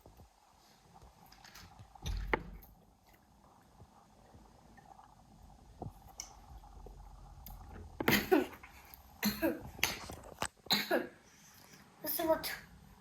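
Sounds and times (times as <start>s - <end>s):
person coughing: 8.0s - 8.6s, 9.2s - 9.7s, 10.7s - 11.2s.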